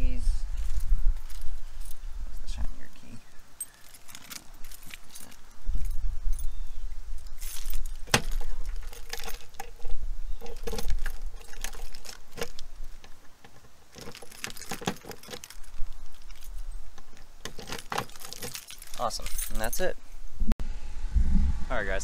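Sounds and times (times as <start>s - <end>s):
keys jangling: 0.5s - 2.0s, 3.6s - 19.9s
low rumble: 20.4s - 22.0s.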